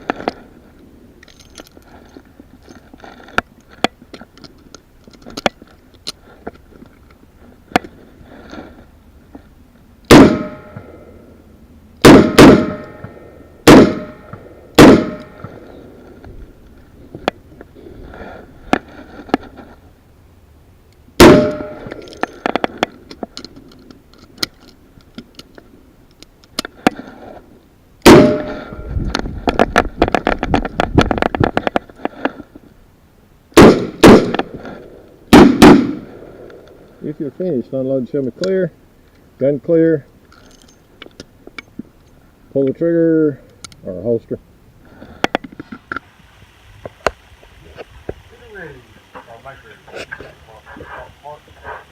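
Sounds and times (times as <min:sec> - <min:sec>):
burst of small impacts: 0:10.1 - 0:11.0, 0:12.0 - 0:15.8, 0:21.2 - 0:23.4, 0:28.0 - 0:32.5
revolver shots: 0:12.0 - 0:15.6, 0:21.2 - 0:22.0.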